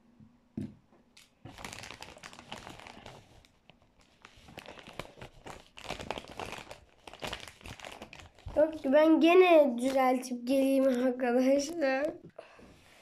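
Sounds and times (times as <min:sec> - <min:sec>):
chip packet crinkling: 0:01.2 - 0:09.0.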